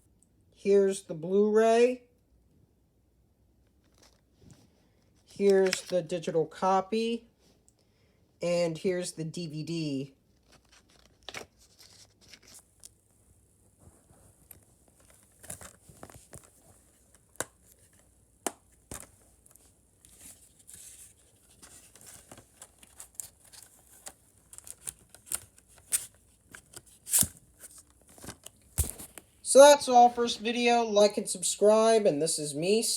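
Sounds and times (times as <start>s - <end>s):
packaging clicks and rustles: 5.0s - 6.0s, 10.4s - 13.0s, 14.0s - 29.3s.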